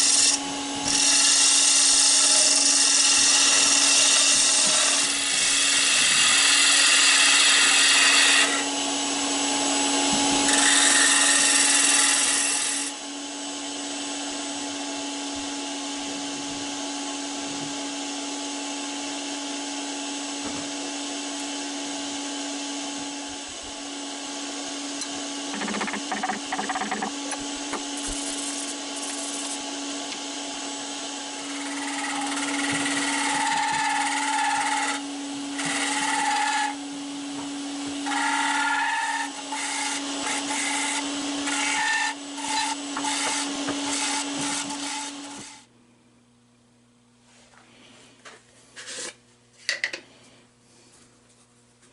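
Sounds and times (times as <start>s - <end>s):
tool hissing on spinning wood: 0.0s - 8.7s, 10.4s - 13.0s, 25.4s - 29.7s, 31.4s - 36.9s, 38.0s - 45.6s
wood lathe humming: 0.0s - 16.8s, 21.0s - 45.7s.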